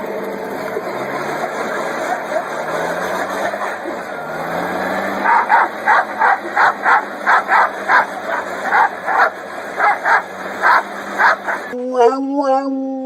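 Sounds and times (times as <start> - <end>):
dog barking: 5.2 - 11.8.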